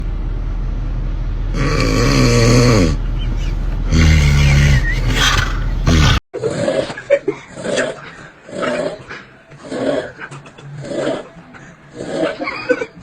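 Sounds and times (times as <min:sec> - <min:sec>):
loud buzzing snoring: 0:01.6 - 0:03.0, 0:03.9 - 0:06.2
short snort: 0:03.9 - 0:06.2.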